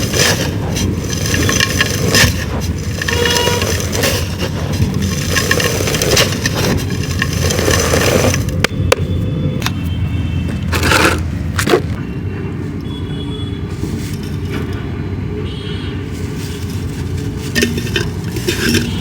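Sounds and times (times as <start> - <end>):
low background rumble: 0.0 - 8.7
dried clay crumbling: 0.0 - 9.0, 16.1 - 19.0.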